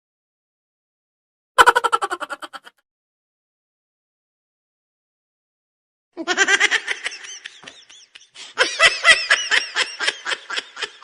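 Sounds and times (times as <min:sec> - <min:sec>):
person laughing: 0:01.6 - 0:02.8, 0:06.2 - 0:11.0.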